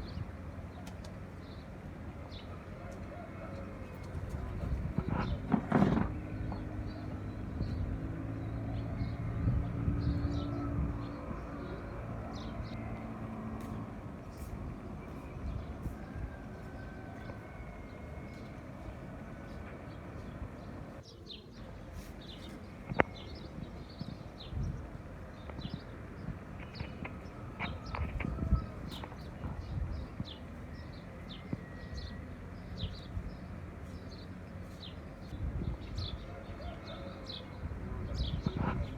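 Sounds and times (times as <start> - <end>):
small birds chirping: 13.6 - 38.9.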